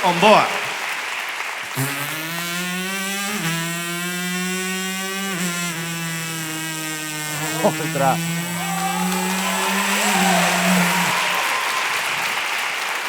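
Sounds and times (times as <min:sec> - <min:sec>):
man imitating motorcycle engine: 0:03.4 - 0:11.4.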